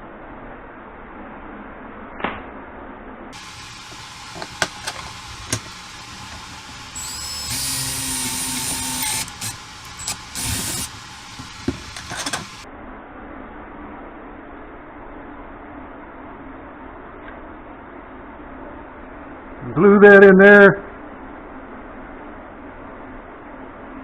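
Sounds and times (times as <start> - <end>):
electric drill boring into wood: 3.4 - 12.6.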